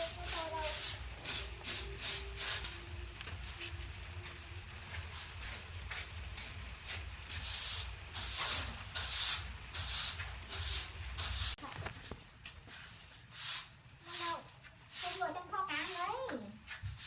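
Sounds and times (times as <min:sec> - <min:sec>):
steady high whine: 0:00.0 - 0:14.5
short hissing swishes: 0:00.1 - 0:02.8, 0:07.4 - 0:11.6, 0:13.3 - 0:16.1.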